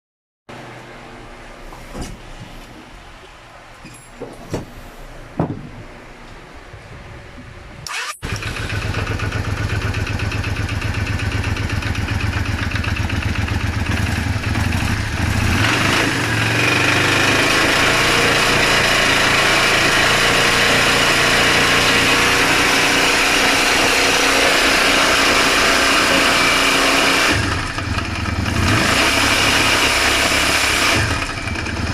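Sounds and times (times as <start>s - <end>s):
abnormal internal engine noise: 0.5s - 31.9s
motorcycle engine revving: 7.9s - 31.9s.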